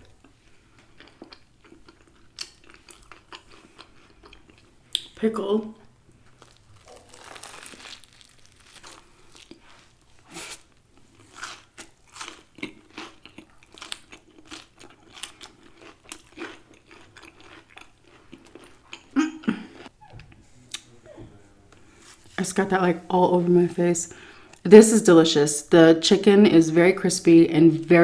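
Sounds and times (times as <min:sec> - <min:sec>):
crunchy chewing of fried chicken: 0:00.0 - 0:05.2, 0:05.8 - 0:20.0.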